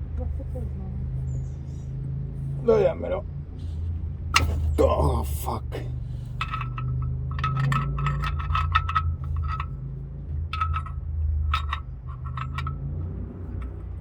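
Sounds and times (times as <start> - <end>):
ratchet wrench clicking: 6.3 - 9.7.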